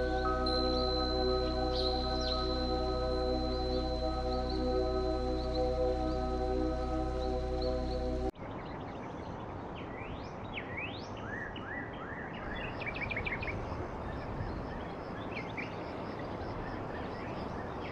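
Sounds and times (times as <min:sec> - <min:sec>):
birds chirping: 0:00.0 - 0:08.2
noisy outdoor background: 0:00.0 - 0:17.9.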